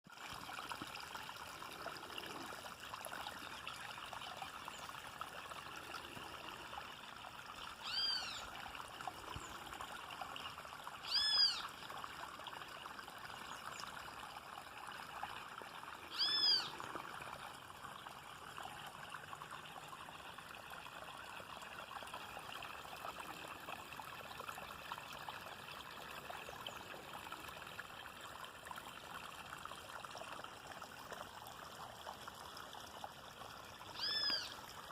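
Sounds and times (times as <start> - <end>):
water trickling: 0.1 - 34.9
animal calling: 7.8 - 8.4, 16.1 - 16.8, 34.0 - 34.5.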